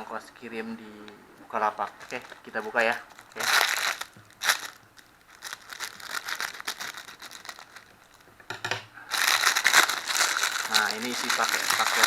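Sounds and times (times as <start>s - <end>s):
packaging crinkling and rustling: 1.6s - 8.3s, 9.1s - 12.0s
packaging tearing: 1.8s - 8.2s, 9.1s - 12.0s.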